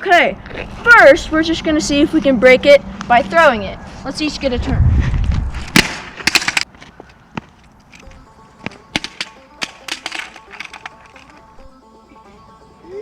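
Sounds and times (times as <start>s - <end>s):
scooter clattering on ground: 5.7s - 11.6s
background music: 7.9s - 13.0s.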